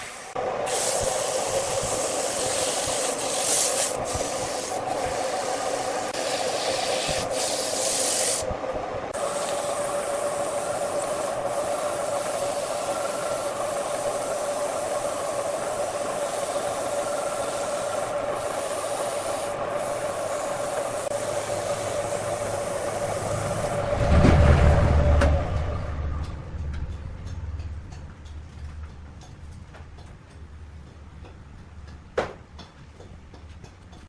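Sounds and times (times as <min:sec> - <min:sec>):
sanding hiss on spinning wood: 0:00.0 - 0:08.5, 0:09.2 - 0:23.8
wood lathe humming: 0:09.2 - 0:23.9.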